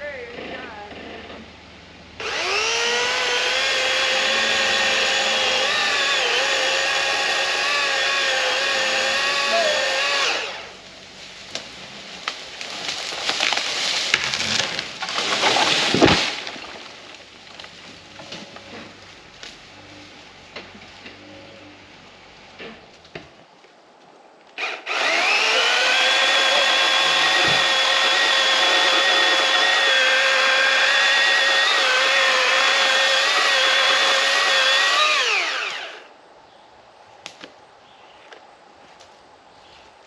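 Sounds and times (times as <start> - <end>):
electric chainsaw cutting: 2.2 - 10.8, 24.6 - 36.1
tree falling with heavy thud: 11.4 - 19.6
wood cracking and splintering: 11.4 - 19.6, 24.6 - 36.0.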